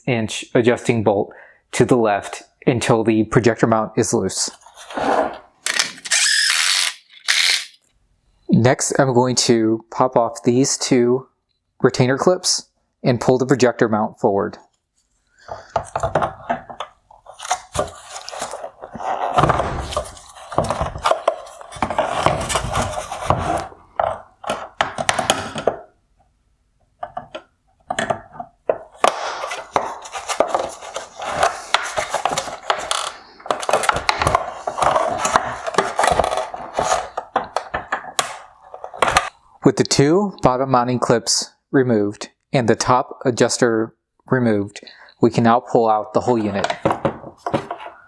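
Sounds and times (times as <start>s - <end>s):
plastic parts scraping and clicking: 5.7s - 7.9s.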